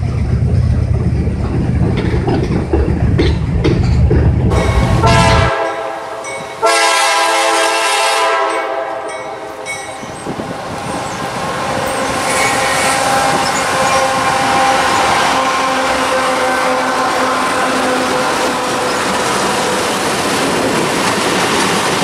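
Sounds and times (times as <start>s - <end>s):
wheels clattering over rail joints: 0.0s - 4.6s
train rumbling past: 0.0s - 22.0s
locomotive horn blasts: 4.6s - 9.6s, 11.2s - 19.3s.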